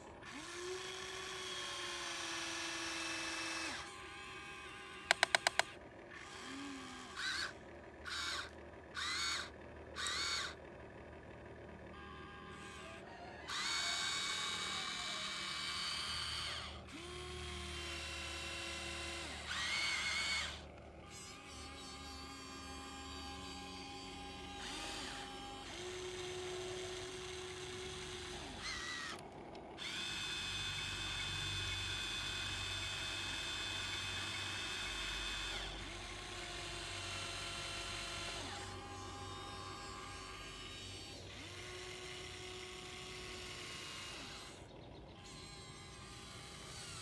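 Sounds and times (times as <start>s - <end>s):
small electric motor whining: 0.0s - 47.0s
sharp clicks: 5.1s - 5.8s.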